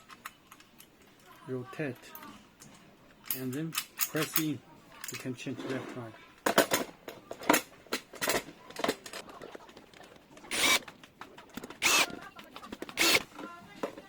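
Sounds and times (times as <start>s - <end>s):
power drill whirring: 10.5s - 10.8s, 11.7s - 12.2s, 12.9s - 13.3s.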